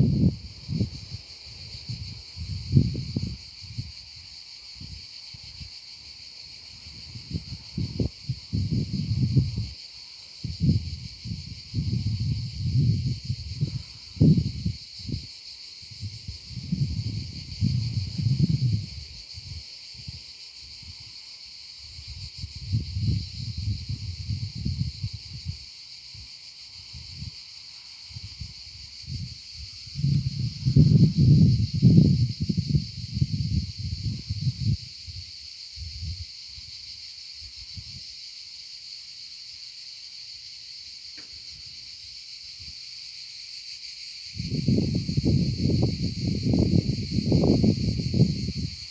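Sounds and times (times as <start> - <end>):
insect chorus: 0.0 - 48.9.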